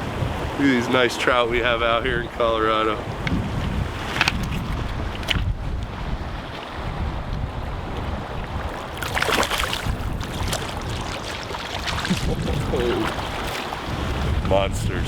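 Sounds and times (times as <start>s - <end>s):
wind buffeting microphone: 0.0s - 15.0s
river water rushing: 8.6s - 14.4s.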